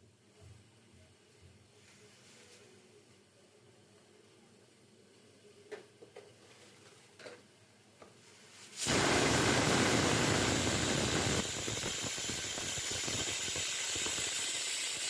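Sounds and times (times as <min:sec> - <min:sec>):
pressure cooker steam hissing: 0:08.8 - 0:15.0.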